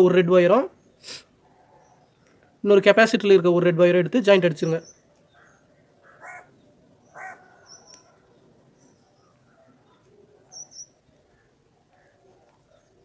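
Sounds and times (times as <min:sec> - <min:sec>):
birds calling harshly: 0:04.6 - 0:13.0.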